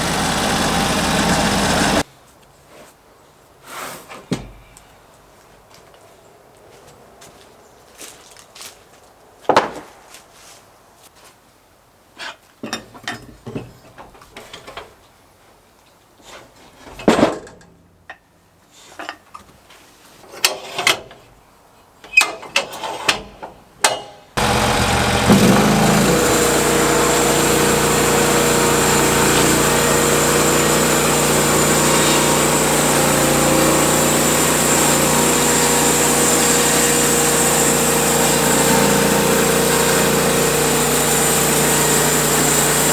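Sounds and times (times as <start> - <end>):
sawmill engine running: 0.0 - 2.0, 24.4 - 42.9.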